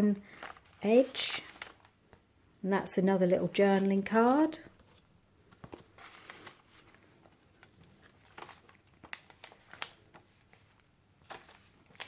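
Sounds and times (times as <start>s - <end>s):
paper rustling: 0.3s - 2.0s, 4.8s - 12.0s.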